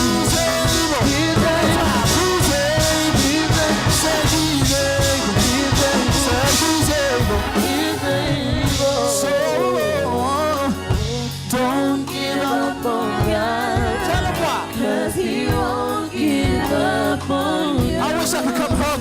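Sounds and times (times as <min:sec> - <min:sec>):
gospel band playing: 0:00.0 - 0:19.0
people singing: 0:00.0 - 0:19.0
steady drum beat: 0:00.0 - 0:19.0.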